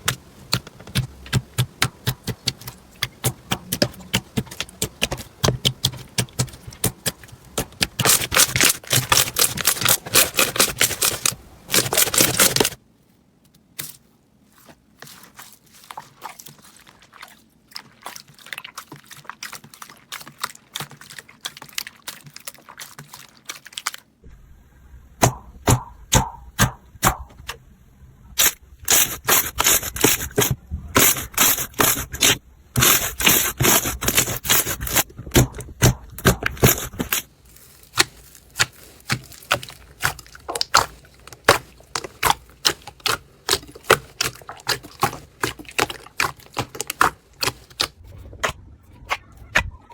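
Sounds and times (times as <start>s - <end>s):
slime clicking and popping: 37.8s - 48.0s.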